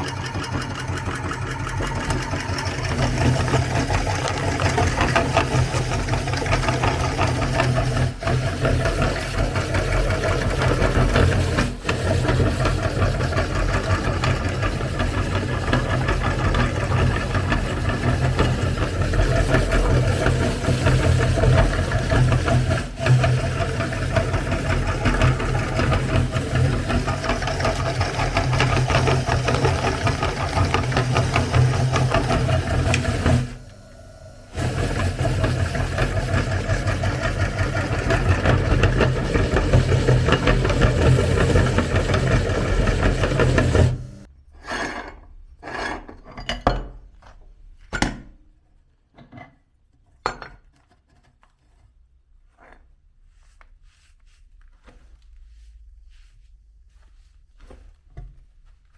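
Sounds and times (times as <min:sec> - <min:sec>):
electric meat grinder running: 0:00.0 - 0:44.3.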